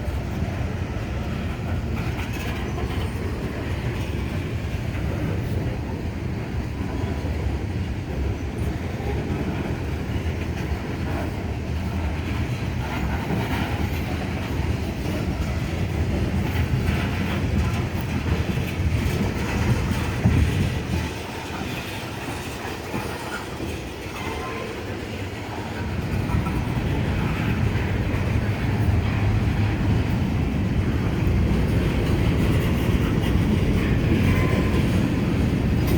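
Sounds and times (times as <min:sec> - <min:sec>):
wheels clattering over rail joints: 0:00.0 - 0:05.8, 0:06.8 - 0:35.9
freight train rolling past: 0:00.0 - 0:35.9.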